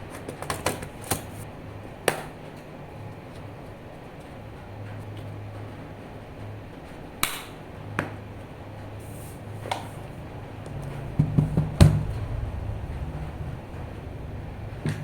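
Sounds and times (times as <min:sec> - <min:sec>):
steady low hum: 0:02.7 - 0:15.0
quick knocks: 0:09.6 - 0:15.0.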